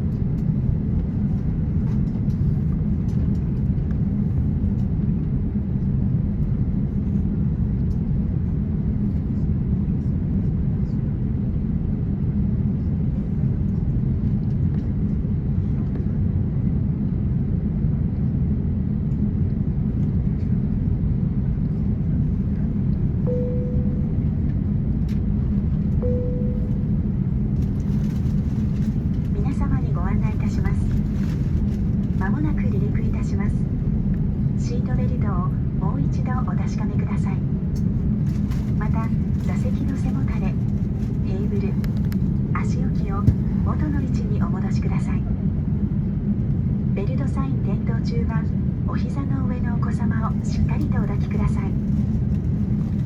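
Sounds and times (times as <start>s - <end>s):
aircraft cabin rumble: 0.0s - 53.0s
short mid-pitched tones: 23.3s - 24.4s, 26.0s - 27.0s.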